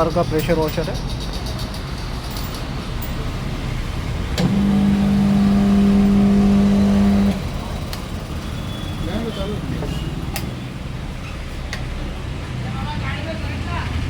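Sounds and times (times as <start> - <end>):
pressure washer motor humming: 4.0 - 7.8.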